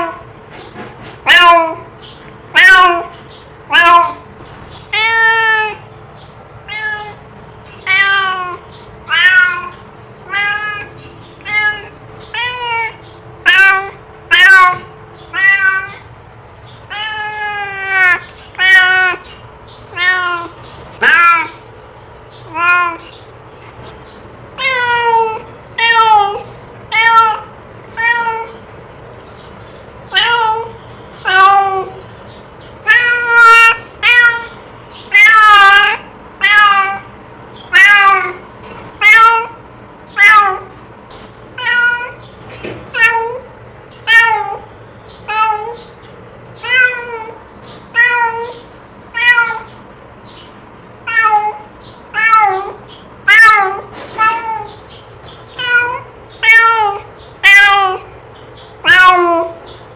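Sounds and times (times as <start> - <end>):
cat meowing: 1.2 - 1.9, 2.5 - 5.8, 6.6 - 16.1, 16.9 - 21.7, 22.4 - 23.2, 24.6 - 28.6, 30.1 - 32.0, 32.8 - 40.8, 41.5 - 46.0, 46.6 - 49.8, 51.0 - 58.2, 58.8 - 59.8.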